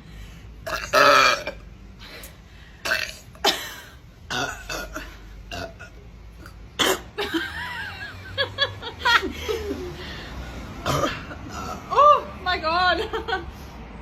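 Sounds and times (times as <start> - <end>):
woman belching: 0.6 - 1.6, 2.8 - 6.0, 10.8 - 12.0.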